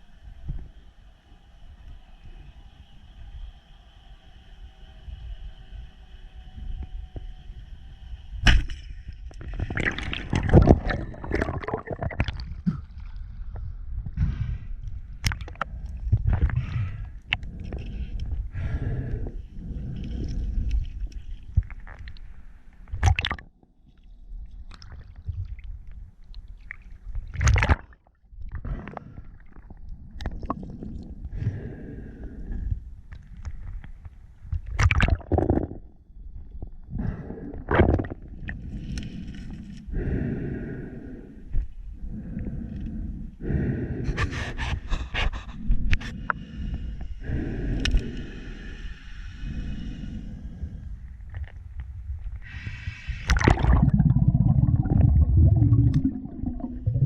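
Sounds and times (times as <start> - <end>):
water gurgling and sloshing: 8.5 - 14.2, 14.8 - 23.6, 24.2 - 33.9, 34.6 - 41.1, 53.2 - 57.0
diver breathing hard: 15.6 - 21.1, 30.6 - 32.9, 36.9 - 37.7, 38.5 - 51.3, 52.3 - 57.0
sharp gasping puffs: 42.2 - 50.9
low steady rumble: 45.5 - 57.0
water splash: 53.3 - 54.1.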